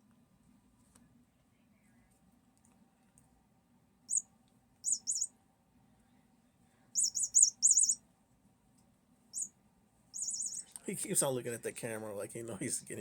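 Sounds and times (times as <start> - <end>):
electronic toy bird chirping: 4.1 - 5.3, 7.0 - 8.0, 9.3 - 9.5, 10.1 - 10.8.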